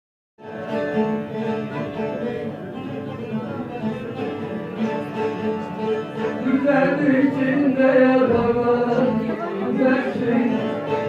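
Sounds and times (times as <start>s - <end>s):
lute music: 0.4s - 11.0s.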